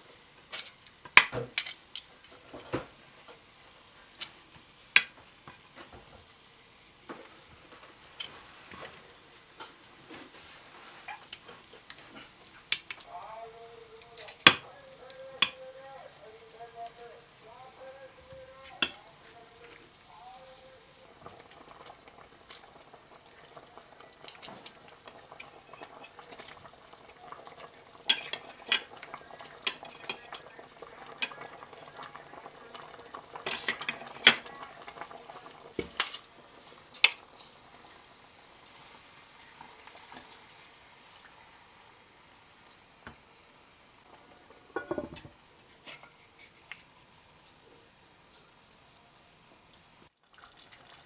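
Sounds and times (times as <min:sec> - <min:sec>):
utensils clinking against pots: 0:00.6 - 0:02.4, 0:13.9 - 0:15.9, 0:18.6 - 0:19.2, 0:27.4 - 0:32.4, 0:33.3 - 0:35.1, 0:35.8 - 0:36.3, 0:36.9 - 0:37.2, 0:44.7 - 0:46.2.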